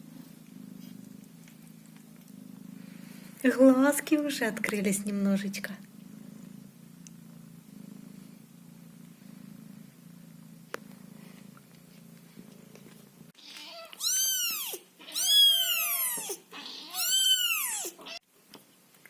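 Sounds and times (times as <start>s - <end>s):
cat purring: 0.0s - 13.6s
kitten mewing: 13.4s - 18.2s.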